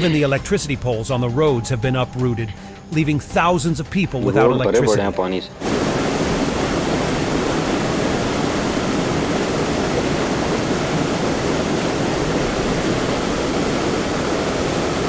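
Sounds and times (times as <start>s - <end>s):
floodwater rushing: 5.6s - 15.0s.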